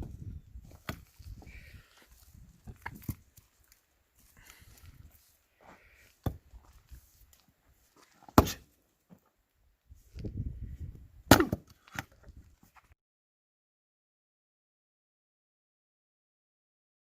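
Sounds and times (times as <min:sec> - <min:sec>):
axe chopping firewood: 0:00.0 - 0:01.3, 0:02.6 - 0:03.2, 0:06.1 - 0:06.8, 0:08.1 - 0:08.8, 0:11.3 - 0:12.2.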